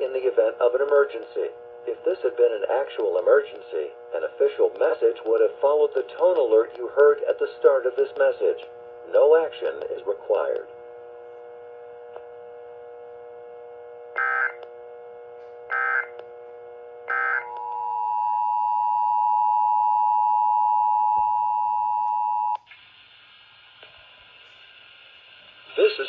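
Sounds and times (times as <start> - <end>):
steady background buzz: 0.0 - 22.6
alert data bursts: 14.2 - 14.6.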